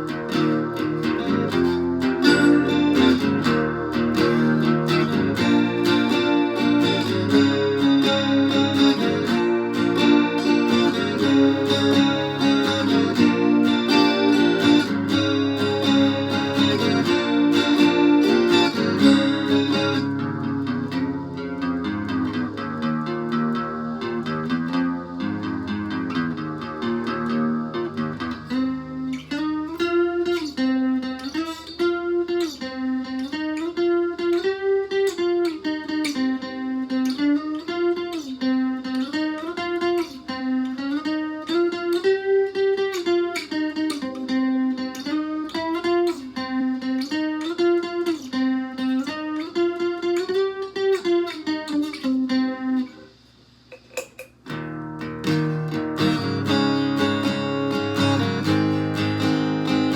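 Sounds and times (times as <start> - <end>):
distorted guitar chords: 0.0 - 53.1, 53.8 - 59.9
distorted guitar single-note figure: 0.0 - 53.1.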